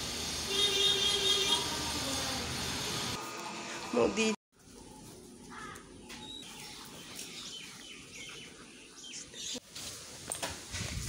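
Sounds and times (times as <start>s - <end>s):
small birds chirping: 5.5s - 9.6s.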